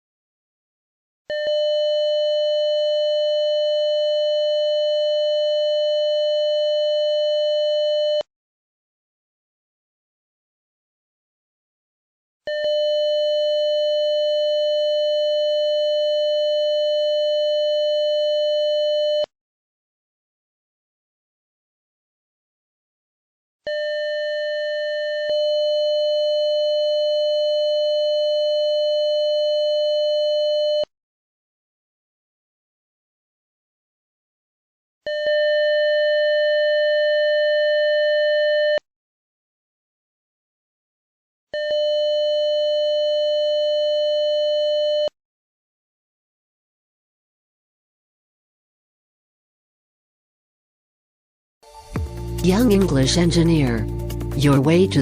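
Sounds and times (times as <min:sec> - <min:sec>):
electronic alarm buzzer tone: 0:23.7 - 0:30.8.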